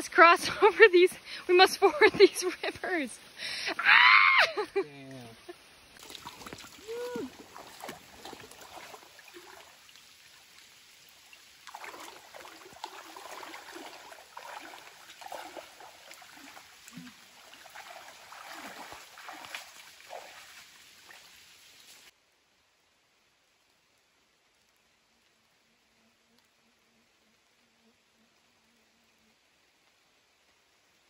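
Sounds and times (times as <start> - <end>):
water splashing and trickling: 0.0 - 22.2.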